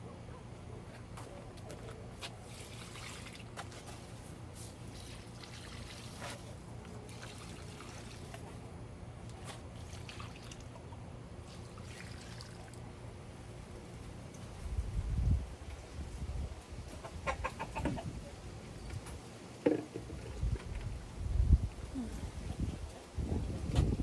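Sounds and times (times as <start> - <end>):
water trickling and pouring: 4.9 - 6.4, 9.8 - 10.8, 11.5 - 12.8.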